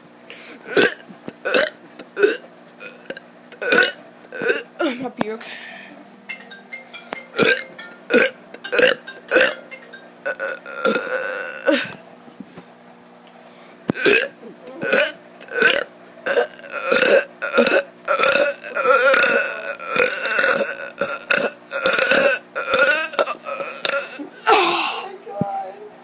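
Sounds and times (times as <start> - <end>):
child burping: 0.7 - 5.0, 7.4 - 9.6, 10.2 - 12.0, 14.0 - 25.1.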